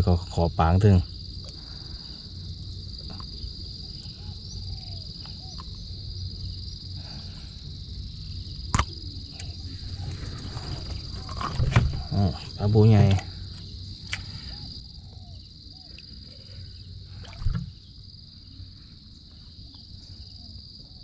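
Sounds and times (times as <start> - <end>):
insects chirring: 0.0 - 21.0.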